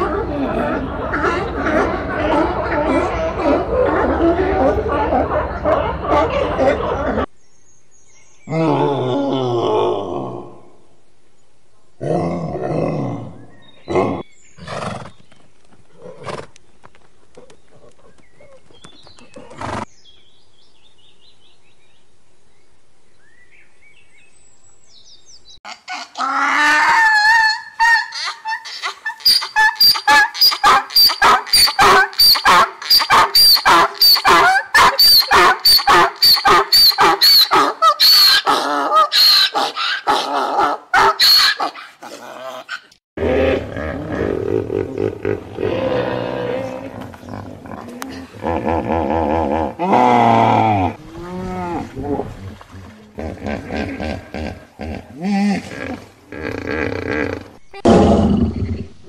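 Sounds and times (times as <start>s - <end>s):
animal making low calls: 0.0s - 7.3s, 25.7s - 59.0s
high-pitched animal calls: 25.7s - 43.0s.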